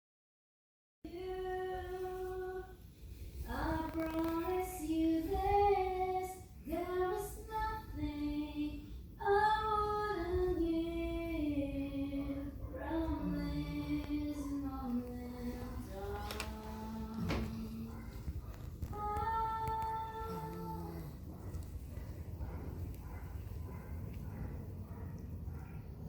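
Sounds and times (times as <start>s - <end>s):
high voice singing slow tune: 3.5s - 21.4s.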